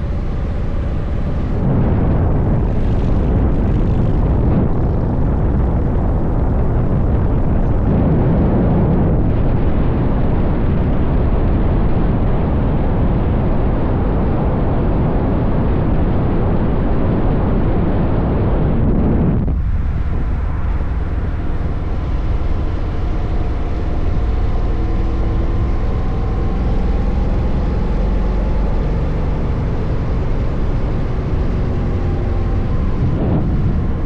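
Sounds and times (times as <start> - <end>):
motorcycle engine running: 0.0 - 9.8
wind noise on microphone: 0.0 - 34.0.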